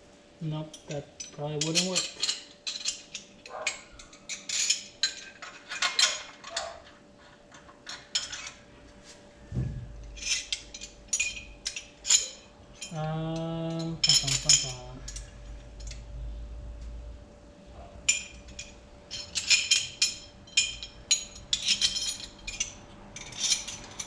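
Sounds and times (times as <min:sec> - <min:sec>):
metal parts clinking together: 0:00.7 - 0:08.6, 0:10.1 - 0:16.0, 0:18.1 - 0:24.0
low rumble: 0:09.5 - 0:10.2.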